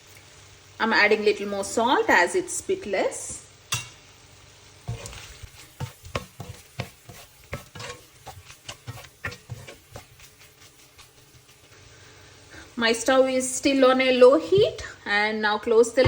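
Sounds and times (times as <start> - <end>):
spatula scraping a pan: 4.8 - 12.0.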